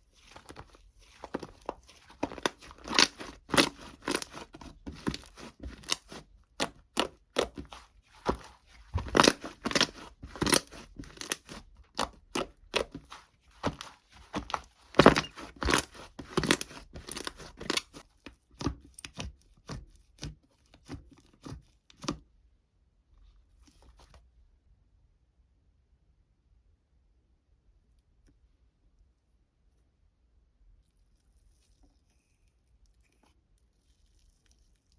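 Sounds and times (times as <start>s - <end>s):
crisp crunching and crackling: 0.1s - 18.0s.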